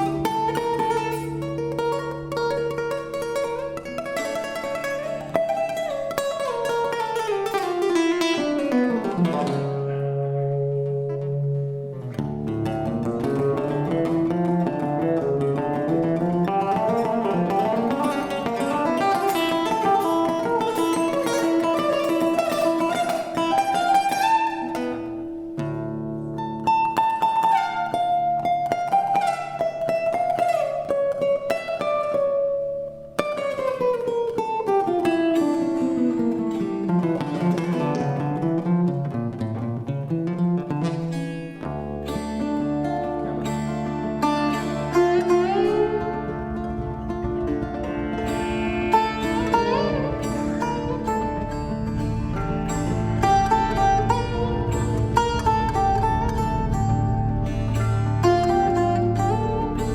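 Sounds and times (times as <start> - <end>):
latin fusion guitar music: 0.0 - 59.9.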